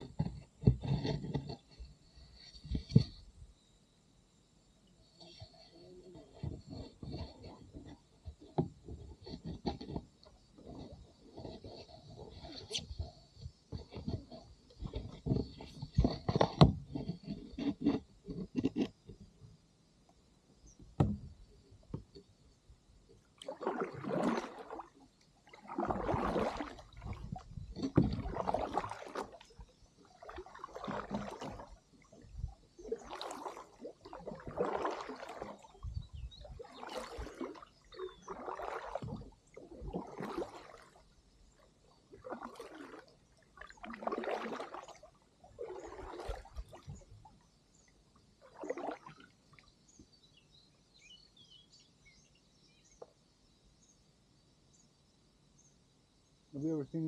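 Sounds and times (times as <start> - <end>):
paddle strokes in water: 0.0 - 3.5, 5.0 - 19.5, 23.1 - 53.2.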